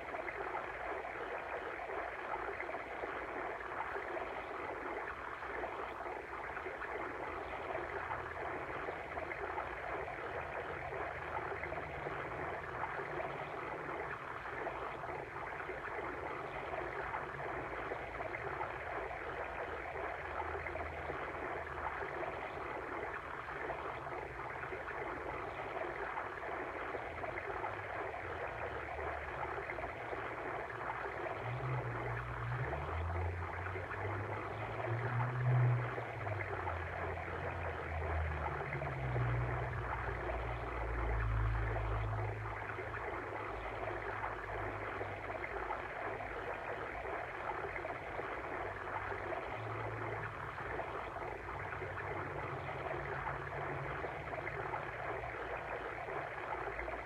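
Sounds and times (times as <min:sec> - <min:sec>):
water stream babbling: 0:00.0 - 0:57.0.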